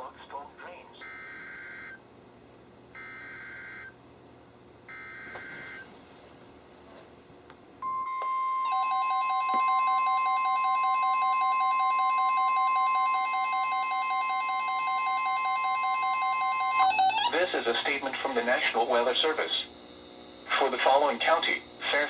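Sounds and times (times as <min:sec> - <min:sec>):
rapid pulsing alarm beeps: 0:01.0 - 0:02.0, 0:03.0 - 0:04.0, 0:04.9 - 0:05.9, 0:07.8 - 0:17.5
steady warning alarm tone: 0:01.0 - 0:02.0, 0:02.9 - 0:04.0, 0:04.8 - 0:06.0, 0:07.8 - 0:22.0
buzzy warbling data screech: 0:16.8 - 0:17.5.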